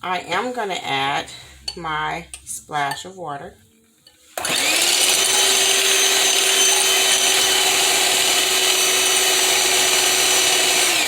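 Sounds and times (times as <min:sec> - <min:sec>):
electric blender motor running: 0:04.4 - 0:11.0.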